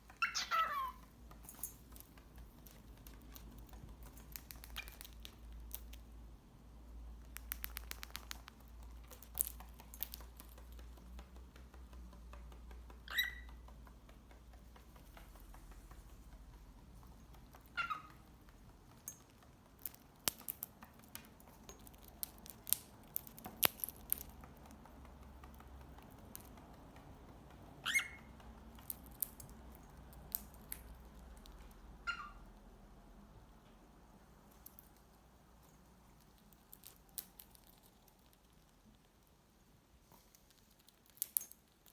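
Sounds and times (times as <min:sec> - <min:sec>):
bird chirps: 0:00.1 - 0:01.0, 0:13.0 - 0:13.6, 0:17.8 - 0:18.2, 0:27.8 - 0:28.3
birds cracking seed clicks: 0:00.2 - 0:06.1, 0:07.2 - 0:11.1, 0:19.8 - 0:26.8, 0:40.8 - 0:41.9.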